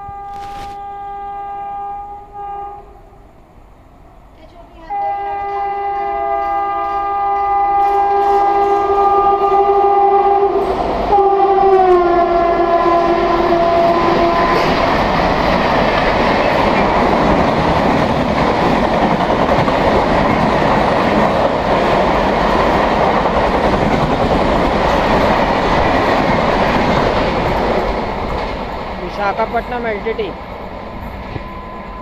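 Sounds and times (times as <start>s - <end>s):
train horn sounding: 0.0s - 3.2s, 4.7s - 15.4s, 31.2s - 32.0s
train coaches rushing past: 5.6s - 32.0s.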